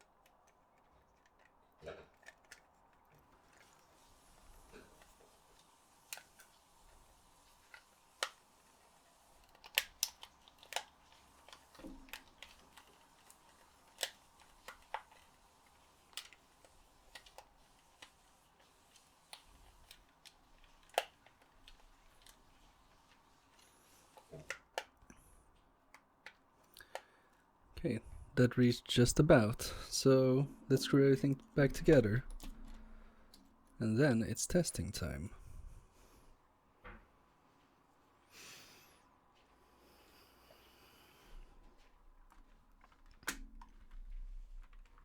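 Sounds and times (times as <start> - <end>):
plastic controller parts clicking: 0.0 - 3.9, 9.4 - 25.1, 25.8 - 27.2.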